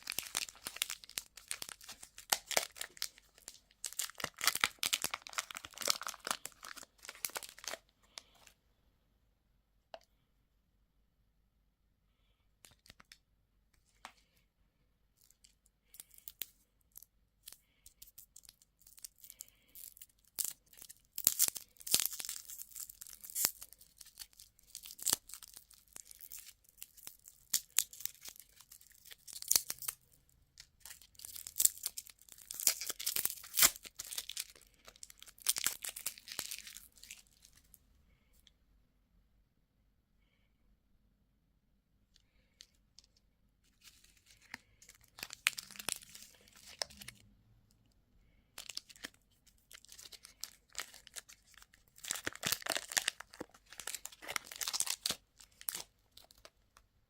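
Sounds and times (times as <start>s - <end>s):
plastic packaging crinkling: 0.0s - 8.5s, 17.9s - 37.7s, 43.7s - 47.2s, 48.6s - 56.6s.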